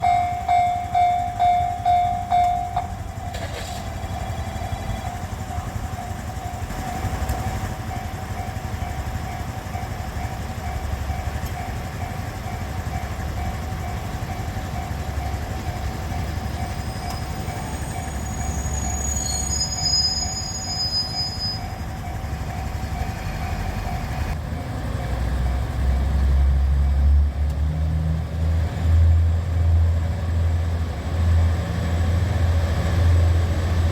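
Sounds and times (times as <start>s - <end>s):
level-crossing alarm ringing: 0.0s - 24.4s
diesel railcar rumbling past: 0.0s - 33.9s
high squeal: 16.4s - 21.8s.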